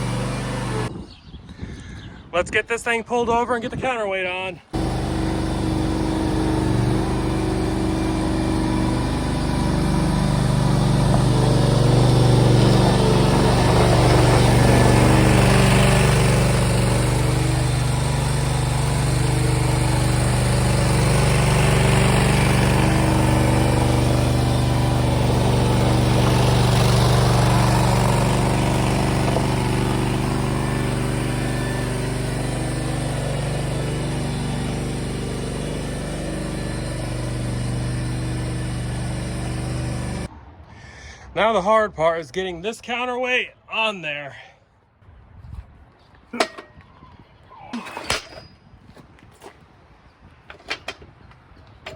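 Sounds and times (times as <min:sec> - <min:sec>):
engine running steadily: 0:00.0 - 0:00.9, 0:04.8 - 0:40.3.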